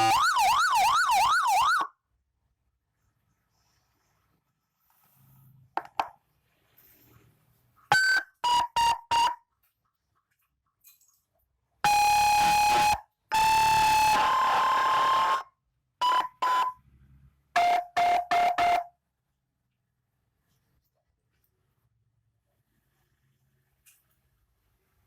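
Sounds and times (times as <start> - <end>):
electronic siren blips and tones: 0.0 - 1.9, 11.9 - 15.4.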